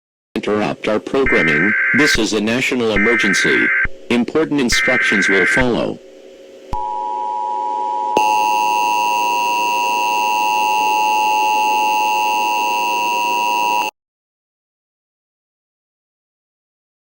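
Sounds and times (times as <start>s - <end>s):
loud steady electronic tone: 1.1s - 13.9s
higher electronic tone: 1.3s - 13.9s.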